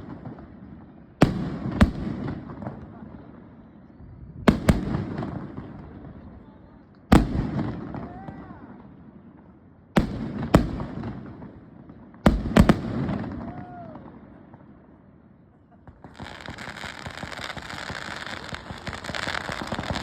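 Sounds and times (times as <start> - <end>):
fireworks booming: 7.1 - 8.6, 10.0 - 14.7, 15.6 - 20.0.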